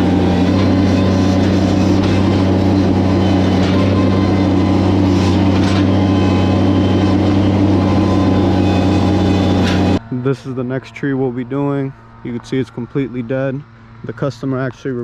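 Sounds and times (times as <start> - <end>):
heavy engine running steadily: 0.0 - 10.0.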